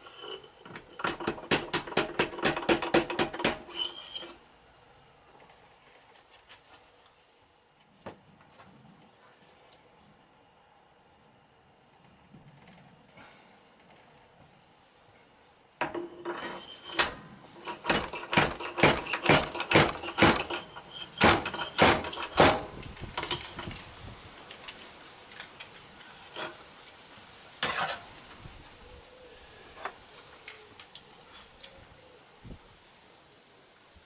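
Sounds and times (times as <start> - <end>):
metal parts clinking: 0.0 - 4.5, 15.8 - 23.8, 26.1 - 26.6.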